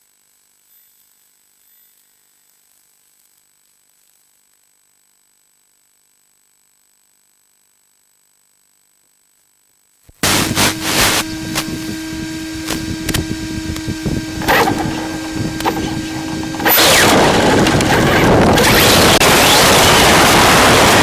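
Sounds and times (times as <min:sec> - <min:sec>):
electric rc car driving: 0:12.6 - 0:21.0
rc car rushing over ground: 0:14.4 - 0:21.0.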